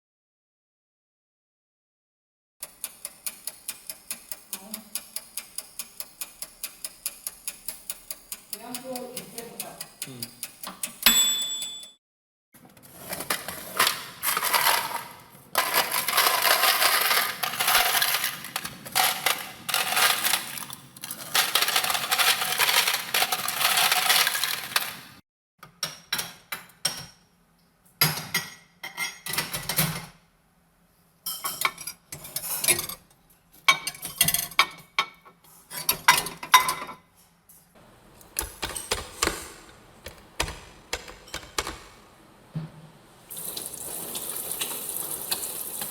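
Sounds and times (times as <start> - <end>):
dishes and cutlery clattering: 31.3 - 33.0, 33.7 - 37.0, 38.2 - 42.0.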